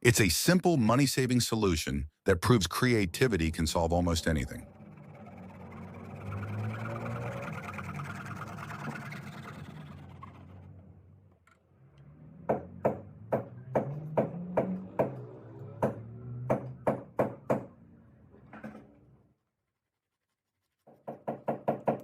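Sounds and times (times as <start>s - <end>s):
low hum: 3.3s - 12.2s
sharp knocks: 12.5s - 17.7s, 21.0s - 22.0s.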